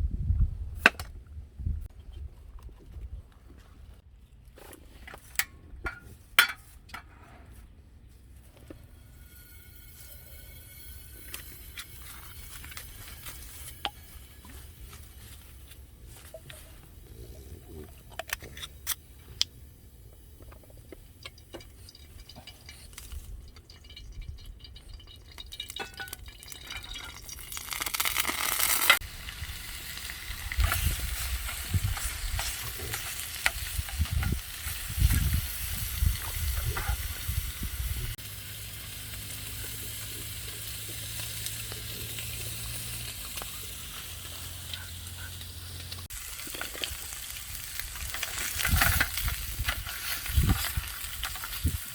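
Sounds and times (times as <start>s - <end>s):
clattering stirring strokes: 8.6s - 15.5s
food sizzling in a pan: 9.0s - 14.6s, 26.7s - 45.2s, 46.0s - 51.9s.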